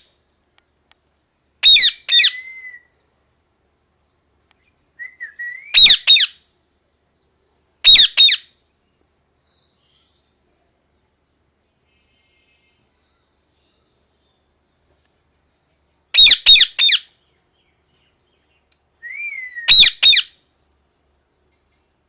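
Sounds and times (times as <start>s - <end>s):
parrot screeching: 1.6s - 2.4s, 5.8s - 6.4s, 7.8s - 8.4s, 16.2s - 17.1s, 19.7s - 20.3s
parrot whistle: 1.6s - 2.9s, 5.0s - 6.3s, 7.9s - 8.4s, 16.2s - 17.1s, 19.0s - 20.3s.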